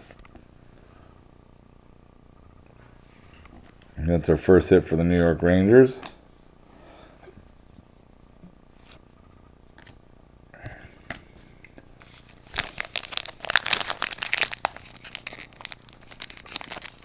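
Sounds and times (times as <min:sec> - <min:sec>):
wrapper crinkling and tearing: 0:12.0 - 0:17.0.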